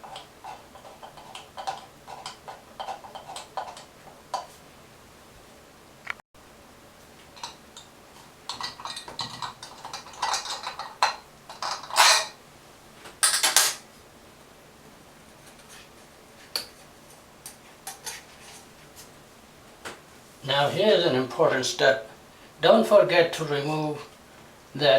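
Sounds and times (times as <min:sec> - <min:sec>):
metal tools clinking: 0:08.5 - 0:12.4.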